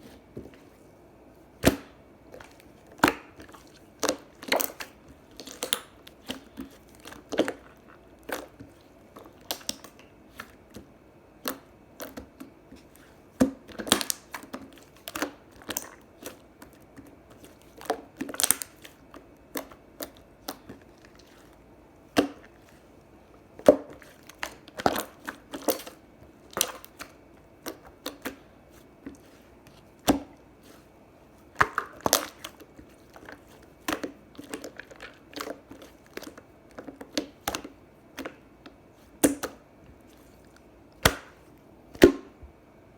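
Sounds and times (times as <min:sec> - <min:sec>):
sticky slime clicks and squishes: 0:17.4 - 0:20.8.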